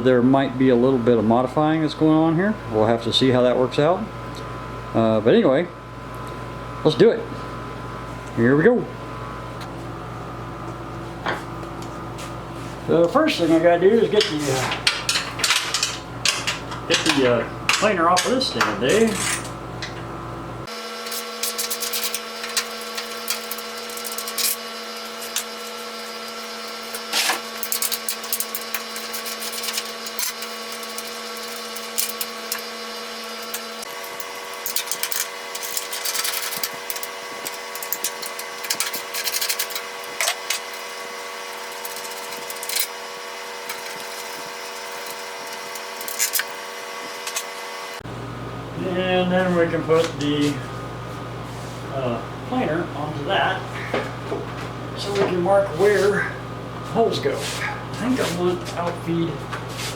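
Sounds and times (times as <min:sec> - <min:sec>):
steady hum: 0:00.0 - 0:59.9
hand tools clicking and clattering: 0:14.1 - 0:20.0, 0:21.0 - 0:32.7, 0:33.4 - 0:47.6.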